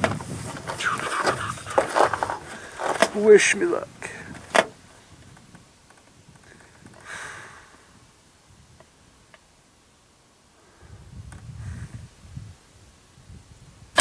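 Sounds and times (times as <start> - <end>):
low background hiss: 0.0 - 14.0.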